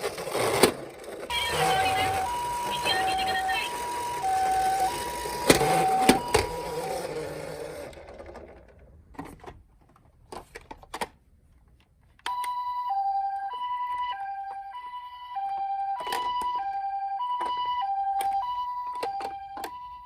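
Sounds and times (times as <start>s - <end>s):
toy cars rolling on a slope: 0.0s - 11.0s
toy cars clacking: 0.0s - 11.1s
toy two-tone siren: 1.3s - 7.9s, 12.3s - 20.0s.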